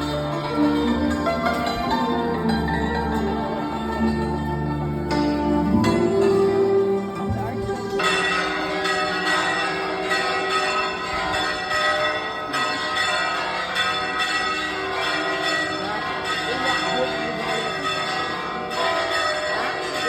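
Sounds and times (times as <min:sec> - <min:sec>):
church bells ringing: 0:00.0 - 0:20.0.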